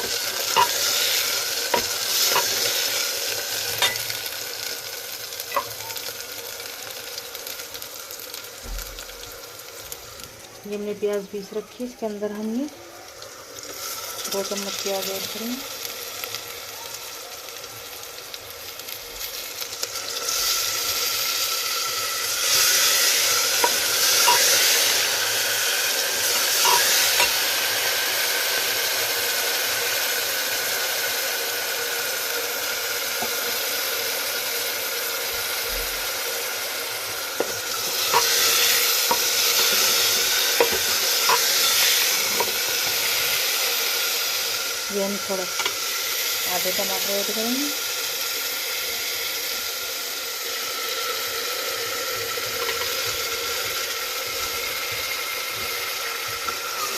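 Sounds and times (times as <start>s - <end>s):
paste sizzling in hot oil: 0.0s - 56.9s
spoon clicking against pan: 23.6s - 24.7s.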